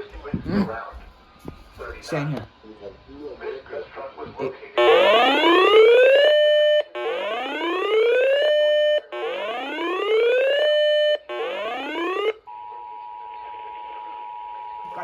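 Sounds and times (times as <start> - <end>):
rising whoop alert siren: 4.8 - 12.4.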